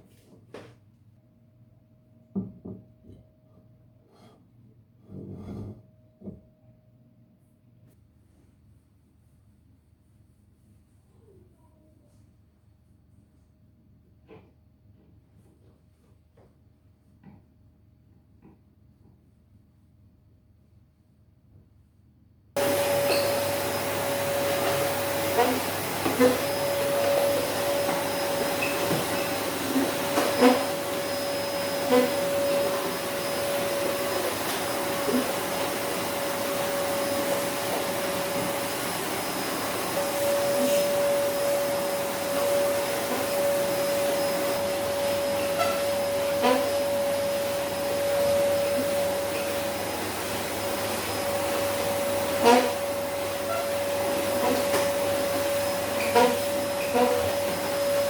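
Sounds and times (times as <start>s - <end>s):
vacuum cleaner whining: 22.6s - 58.0s.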